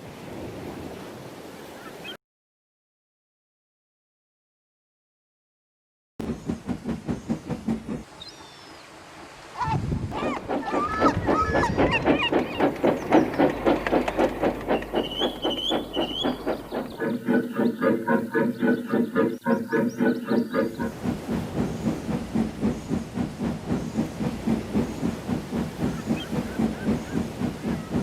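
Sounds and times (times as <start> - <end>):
rail clatter: 6.2 - 8.1, 10.2 - 28.0
steam locomotive chuffing: 6.2 - 8.6, 10.1 - 28.0
steam hiss: 20.6 - 28.0.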